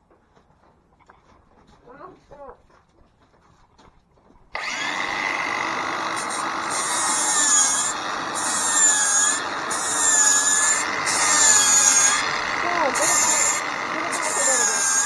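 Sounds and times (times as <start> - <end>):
angle grinder grinding steel: 4.6 - 15.0.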